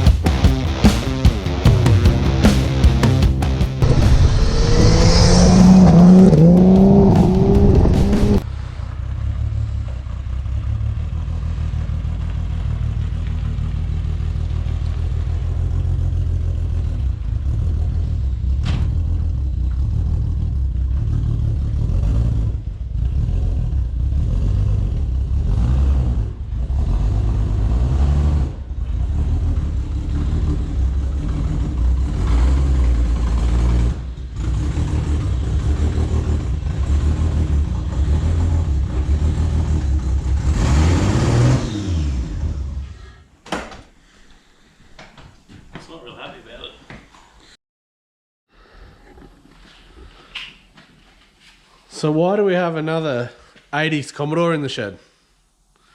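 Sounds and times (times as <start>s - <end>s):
burst of music: 0.3s - 8.4s
car engine idling: 3.8s - 25.5s.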